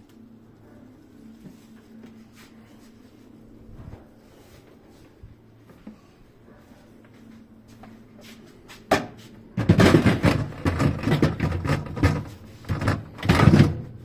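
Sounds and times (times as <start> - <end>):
knocking and rattling handling noise: 8.9 - 14.0.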